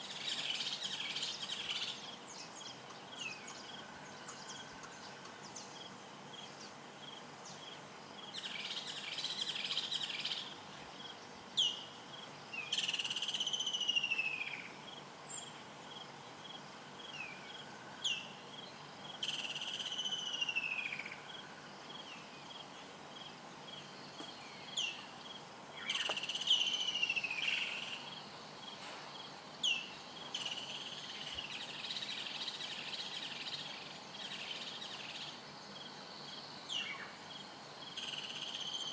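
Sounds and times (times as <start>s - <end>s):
high insect drone: 0.0s - 38.9s.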